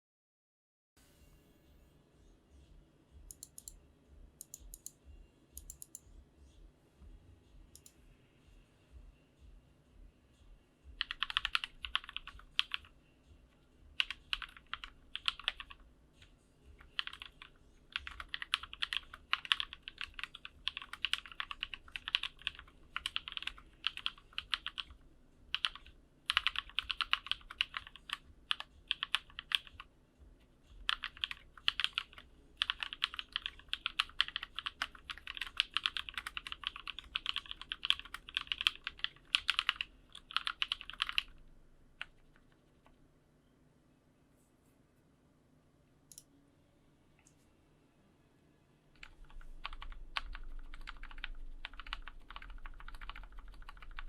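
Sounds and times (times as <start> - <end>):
typing on mechanical keyboard: 11.0 - 12.8, 14.0 - 15.8, 16.8 - 29.8, 30.8 - 41.4, 42.0 - 42.9, 49.0 - 54.0.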